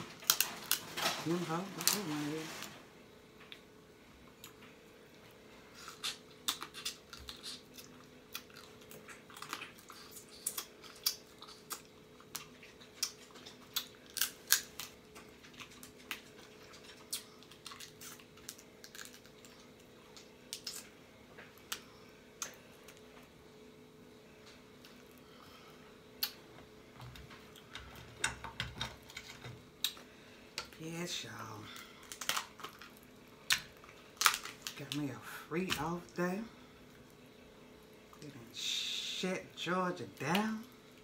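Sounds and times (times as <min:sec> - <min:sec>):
person chewing: 0:04.3 - 0:23.1
crab shells cracking: 0:05.8 - 0:20.9, 0:32.0 - 0:34.9.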